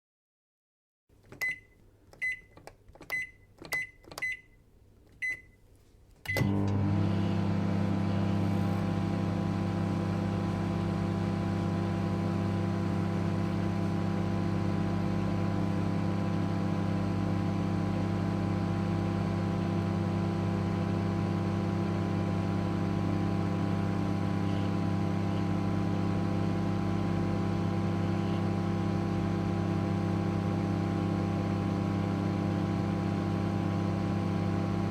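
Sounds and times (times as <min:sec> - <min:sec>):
microwave oven humming: 0:01.2 - 0:34.9
microwave keypad beeps: 0:01.3 - 0:04.6, 0:05.2 - 0:05.6, 0:06.3 - 0:06.6.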